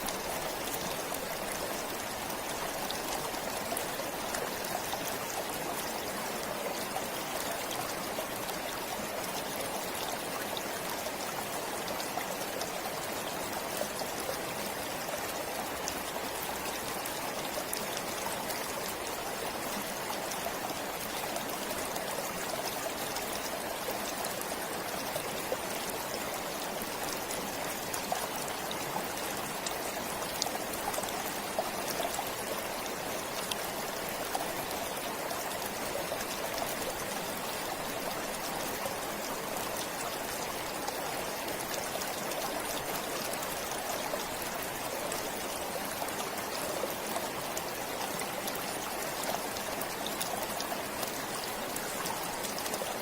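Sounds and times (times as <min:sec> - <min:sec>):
stream babbling: 0:00.0 - 0:53.0.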